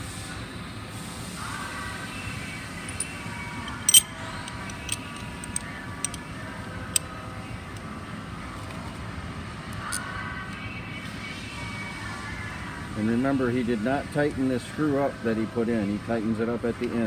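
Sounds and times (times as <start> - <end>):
steady background hum: 2.4 - 8.7
metal tools clicking: 2.9 - 6.2.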